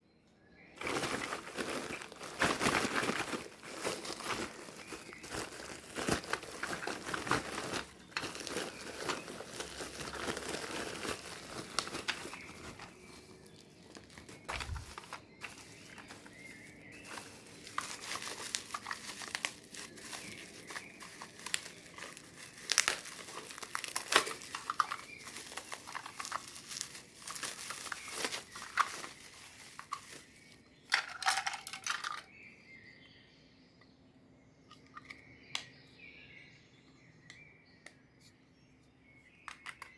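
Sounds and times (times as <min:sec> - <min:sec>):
plastic packaging crinkling and tearing: 0:00.8 - 0:32.2.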